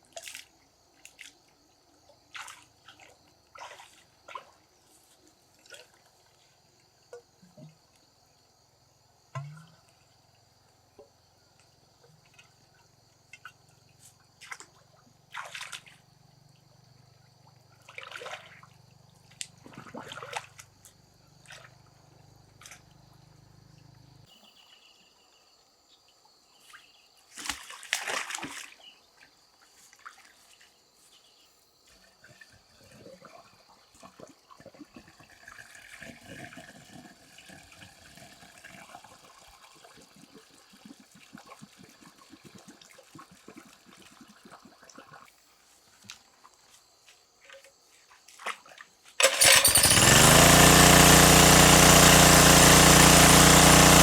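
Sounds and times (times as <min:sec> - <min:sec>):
water splashing and trickling: 0:00.0 - 0:06.7, 0:12.0 - 0:16.1, 0:17.4 - 0:21.9, 0:27.3 - 0:30.8, 0:31.9 - 0:45.4, 0:47.4 - 0:49.8.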